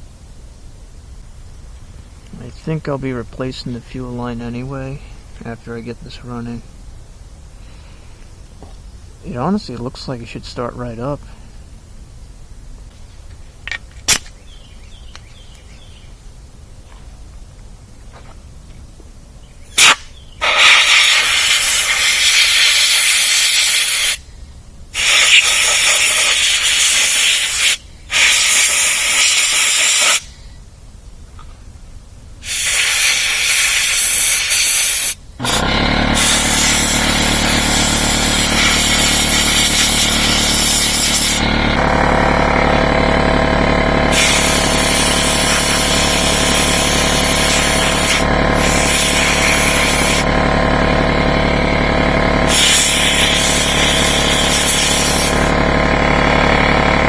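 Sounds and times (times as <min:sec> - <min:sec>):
air blow gun hissing bursts: 0:19.8 - 0:24.2, 0:24.9 - 0:30.3, 0:32.4 - 0:41.8, 0:44.1 - 0:50.3, 0:52.4 - 0:55.6
air compressor motor running: 0:19.8 - 0:24.2, 0:25.0 - 0:30.3, 0:32.4 - 0:57.0.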